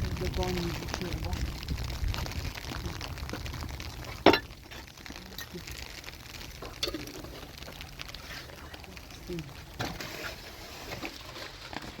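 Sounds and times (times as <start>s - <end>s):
steady low rumble: 0.0s - 6.5s.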